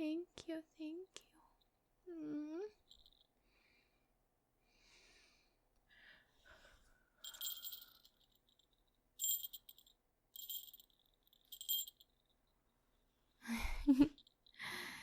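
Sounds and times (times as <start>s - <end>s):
small jingle bell jingling: 2.8s - 3.3s, 7.2s - 12.5s, 13.8s - 14.8s.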